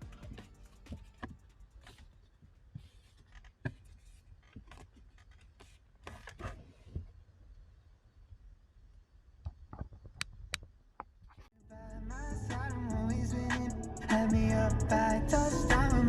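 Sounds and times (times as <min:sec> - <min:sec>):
handling rubbing and scraping: 0:00.0 - 0:07.3.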